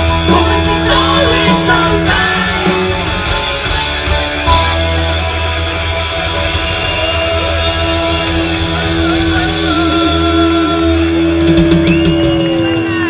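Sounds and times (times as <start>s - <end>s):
steady low bass: 0.0s - 11.8s
electric guitar bending notes: 0.0s - 13.0s.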